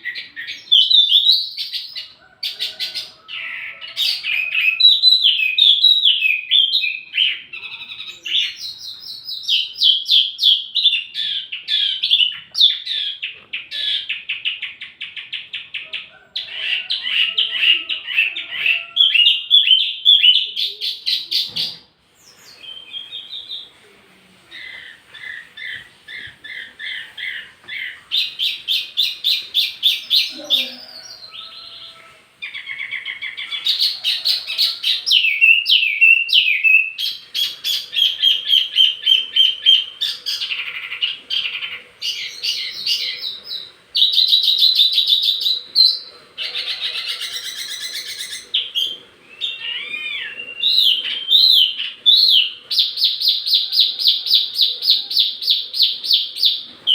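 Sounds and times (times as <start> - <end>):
songbird chirps and trills: 0.0 - 56.9.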